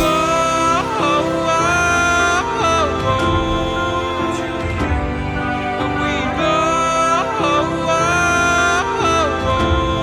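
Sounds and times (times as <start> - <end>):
song with band accompaniment: 0.0 - 10.0.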